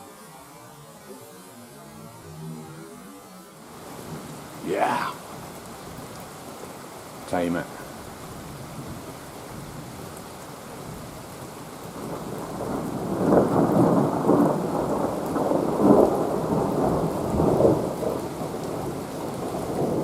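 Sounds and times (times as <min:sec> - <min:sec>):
steady rain: 0:00.0 - 0:20.0
thunder rumbling: 0:12.0 - 0:20.0.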